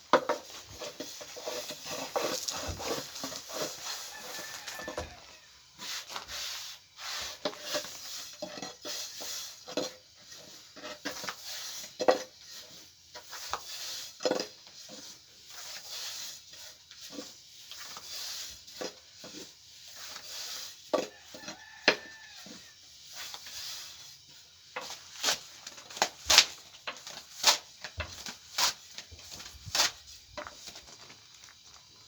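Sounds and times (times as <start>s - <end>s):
objects knocking and scraping: 0.0s - 5.3s, 24.7s - 32.0s.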